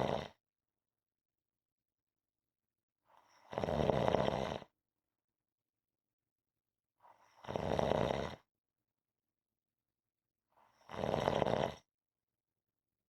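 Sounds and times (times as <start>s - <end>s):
person snoring: 0.0s - 0.4s, 3.2s - 4.7s, 7.2s - 8.4s, 10.7s - 11.9s.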